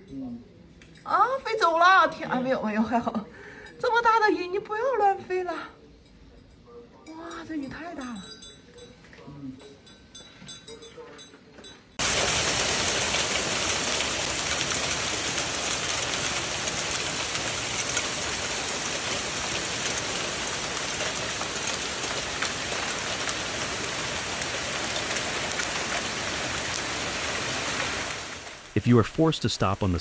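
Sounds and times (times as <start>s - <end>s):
heavy rain falling: 12.0s - 30.0s.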